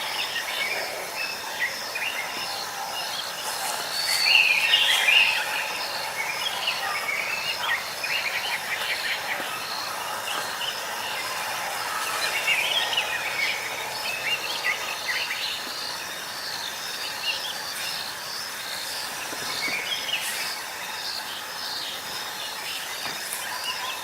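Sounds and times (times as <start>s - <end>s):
insect noise: 0.0s - 24.0s.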